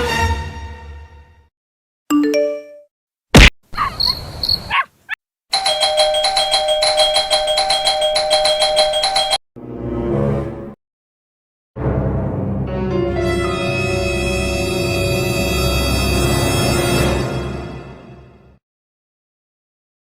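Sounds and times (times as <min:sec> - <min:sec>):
music: 0:00.0 - 0:01.5, 0:09.1 - 0:10.8, 0:11.8 - 0:18.6.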